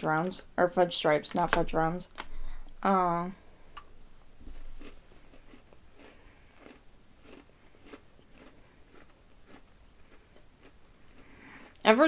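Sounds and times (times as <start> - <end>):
cookie crunching while chewing: 4.7 - 11.9.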